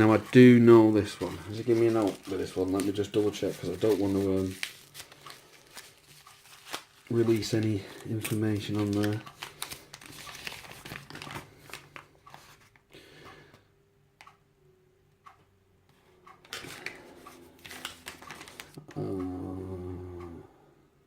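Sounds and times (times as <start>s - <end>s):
paper rustling: 0.0s - 12.8s, 16.5s - 18.8s
voiced hum or murmur: 18.8s - 20.7s.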